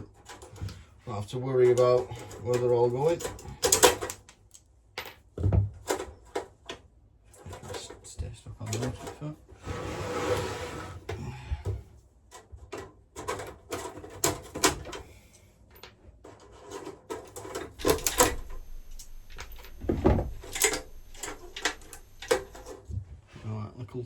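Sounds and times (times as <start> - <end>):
metal parts clicking and clunking: 1.6 - 9.3, 16.2 - 22.8.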